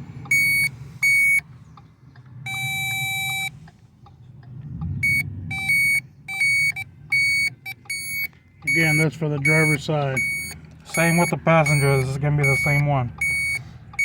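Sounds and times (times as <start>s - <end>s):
low steady hum: 0.0s - 14.0s
circuit tester beeping: 0.3s - 1.4s, 2.5s - 3.5s, 5.0s - 14.0s.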